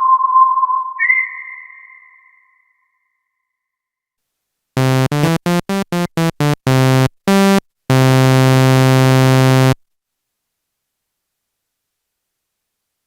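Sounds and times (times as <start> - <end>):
buzzy synthesizer notes: 4.8 - 9.8.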